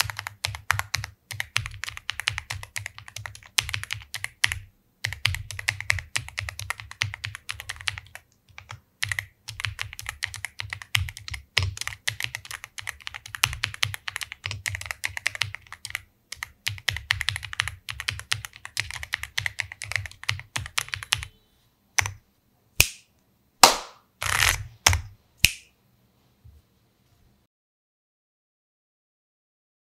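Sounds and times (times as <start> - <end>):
mechanical keyboard typing: 0.0 - 21.3, 22.0 - 22.2.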